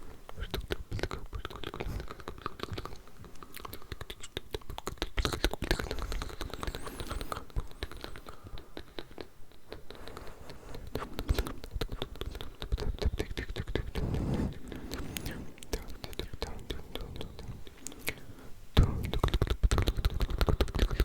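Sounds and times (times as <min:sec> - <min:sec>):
wet mouth clicks and smacks: 0:00.3 - 0:09.9, 0:18.8 - 0:21.0.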